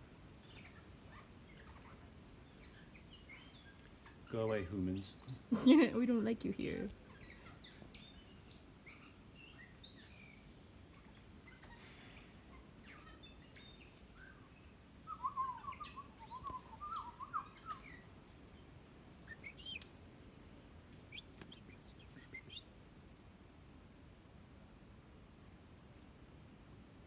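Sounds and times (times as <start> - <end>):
bird chirping: 0.4 - 19.9, 20.9 - 22.8
bird warbling: 15.1 - 18.1, 19.3 - 19.8.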